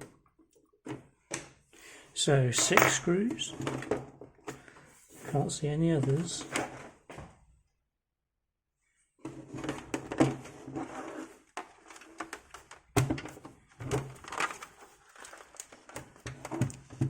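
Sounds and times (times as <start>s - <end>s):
plastic scraping: 9.4s - 17.0s
plastic case being handled: 11.5s - 17.0s.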